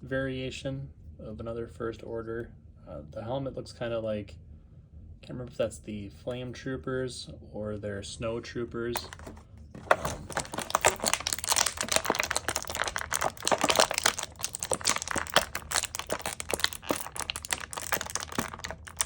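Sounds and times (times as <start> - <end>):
plastic packaging crinkling: 9.0 - 19.0.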